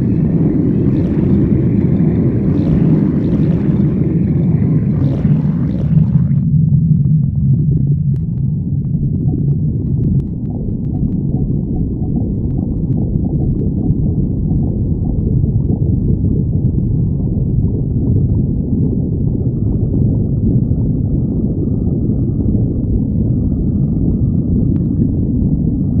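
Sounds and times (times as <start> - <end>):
stomach growling and gurgling: 0.0 - 26.0.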